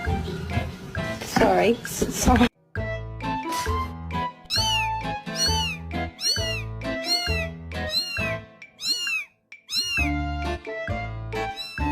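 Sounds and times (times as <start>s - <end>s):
cat meowing: 4.5s - 10.3s, 11.4s - 11.9s.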